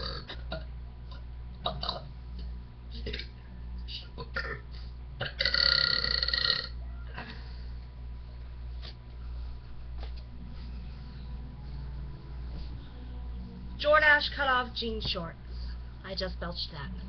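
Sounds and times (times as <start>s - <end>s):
woman belching: 0.0s - 0.7s, 1.6s - 2.1s, 5.2s - 6.8s
steady low hum: 0.0s - 17.0s.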